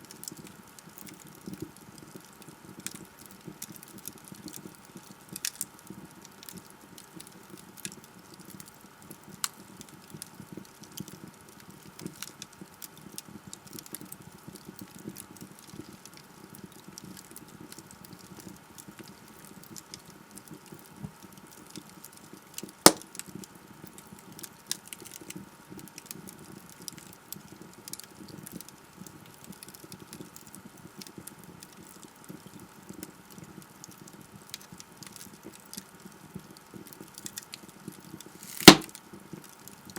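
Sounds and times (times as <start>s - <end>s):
wood fire crackling: 0.1s - 39.9s
loud sharp pop: 38.4s - 38.9s.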